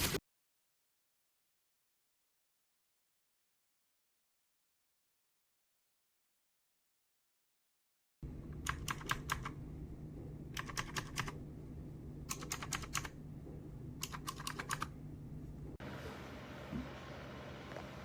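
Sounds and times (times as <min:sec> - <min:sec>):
steady low hum: 0:08.2 - 0:18.0
mechanical keyboard clicks: 0:08.6 - 0:09.6, 0:10.5 - 0:11.4, 0:12.3 - 0:13.2, 0:14.0 - 0:14.9.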